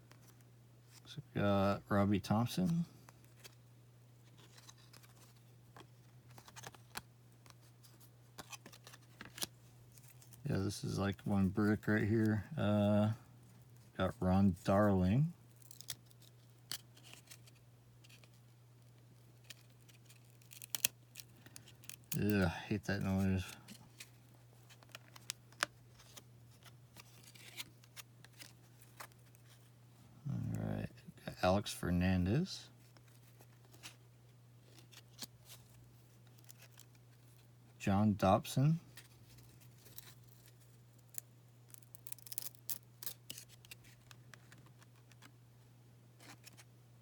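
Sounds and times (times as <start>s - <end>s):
cards being peeled apart: 4.2s - 10.4s, 15.5s - 29.7s, 34.6s - 37.4s, 38.9s - 45.3s, 46.2s - 46.7s
steady low hum: 9.0s - 19.4s, 20.9s - 41.8s.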